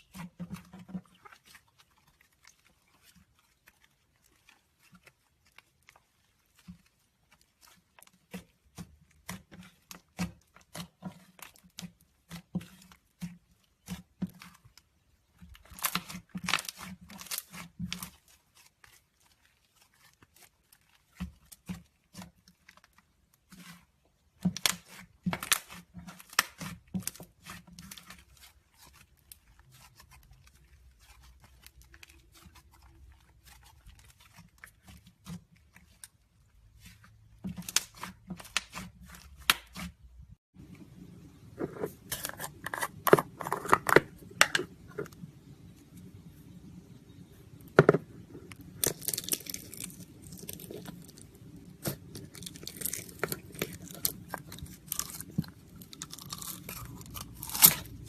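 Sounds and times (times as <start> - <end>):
slime crackling and popping: 0.0 - 23.1, 24.5 - 36.2, 48.6 - 58.0.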